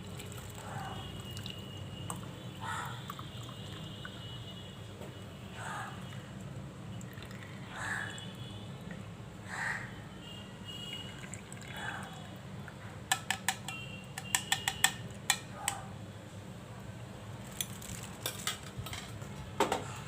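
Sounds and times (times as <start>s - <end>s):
liquid pouring into a glass: 0.0s - 2.2s, 2.9s - 4.3s, 7.0s - 7.6s, 10.8s - 12.3s.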